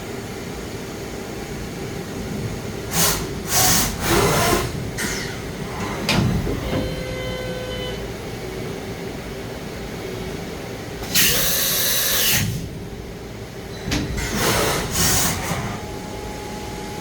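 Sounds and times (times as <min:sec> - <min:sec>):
air hiss bursts: 0:11.1 - 0:12.6
high machine whine: 0:15.3 - 0:17.0.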